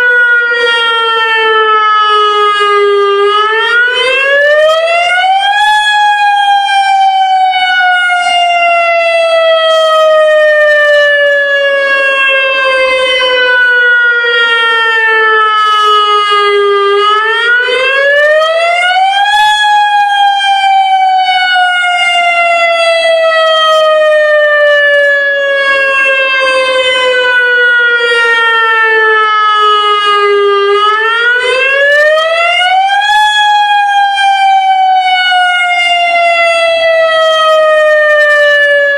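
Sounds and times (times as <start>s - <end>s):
warning siren sweeping: 0.0s - 38.9s.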